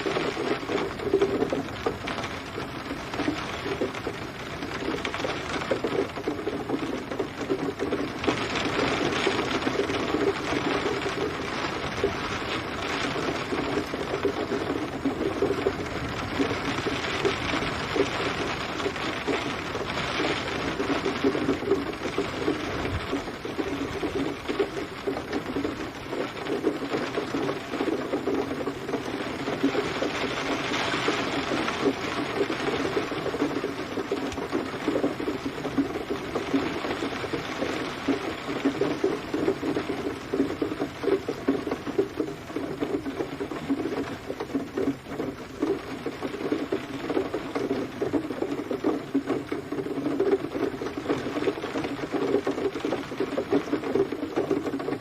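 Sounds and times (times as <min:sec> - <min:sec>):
steady rain patter: 0:00.0 - 0:55.0.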